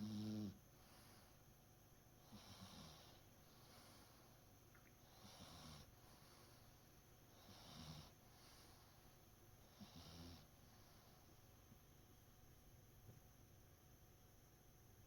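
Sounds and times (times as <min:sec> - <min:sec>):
cat snoring: 0:00.0 - 0:01.3, 0:02.2 - 0:04.2, 0:05.0 - 0:06.6, 0:07.3 - 0:09.0, 0:09.6 - 0:11.1.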